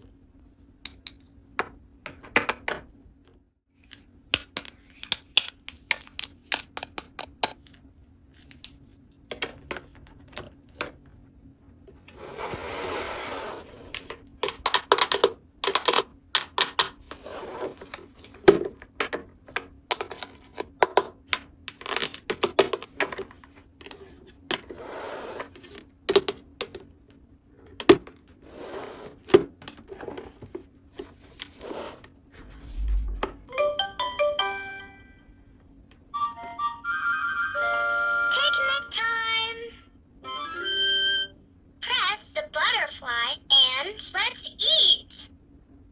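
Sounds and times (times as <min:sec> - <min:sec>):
rustling and scraping: 0:11.9 - 0:14.2, 0:17.0 - 0:19.2, 0:28.3 - 0:33.5
plastic toy pieces clattering: 0:14.4 - 0:16.9.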